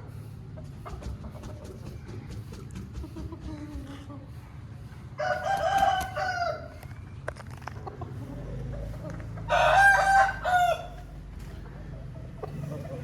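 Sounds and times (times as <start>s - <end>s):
rooster crowing: 5.2s - 6.8s, 9.4s - 11.1s.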